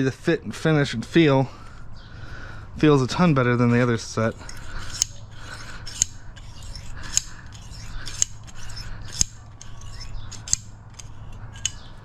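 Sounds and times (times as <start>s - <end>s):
metal rasping: 3.5s - 12.0s
pliers twisting wire: 3.8s - 11.9s
sharp metallic click: 7.1s - 12.0s.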